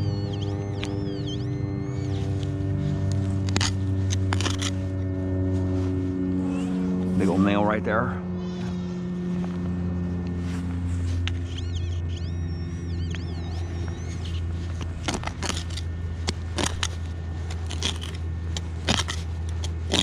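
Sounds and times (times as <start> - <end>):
wavering high tone: 0.0 - 16.0
steady low hum: 0.0 - 20.0
sharp scrapes and crunches: 2.0 - 7.6, 13.2 - 20.0.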